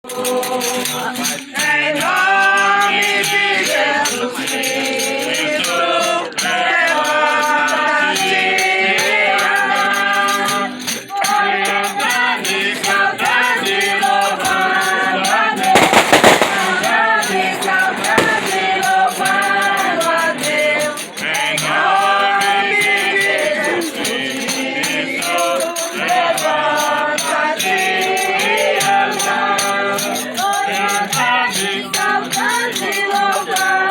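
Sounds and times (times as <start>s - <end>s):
voices singing together: 0.1s - 33.9s
rattling hand percussion: 10.1s - 33.8s
loud noisy crackling burst: 15.8s - 19.1s.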